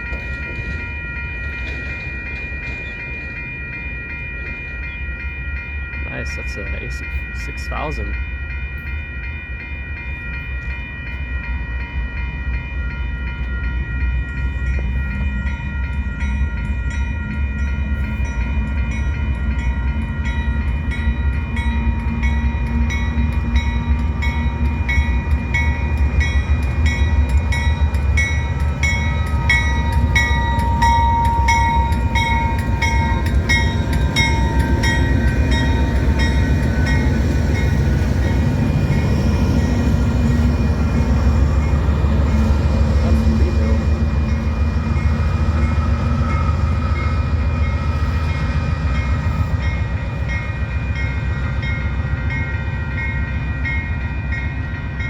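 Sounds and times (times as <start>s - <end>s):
wheels clicking over rail joints: 0.0s - 4.9s
diesel locomotive engine rumble: 0.0s - 55.0s.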